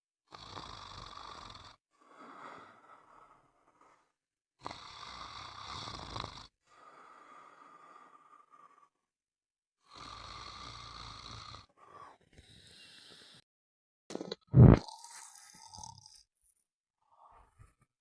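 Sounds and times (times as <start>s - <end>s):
person snoring: 0.3s - 9.0s, 9.8s - 13.4s, 14.2s - 16.3s
person breathing: 2.0s - 4.2s, 6.7s - 9.1s.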